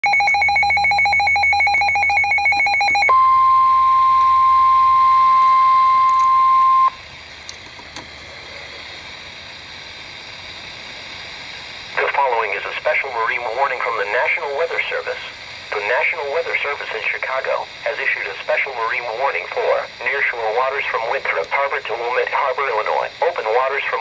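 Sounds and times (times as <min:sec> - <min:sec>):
stuttering electronic data tones: 0:00.0 - 0:03.2
steady warning alarm tone: 0:00.0 - 0:07.0
radio static hiss: 0:06.8 - 0:24.0.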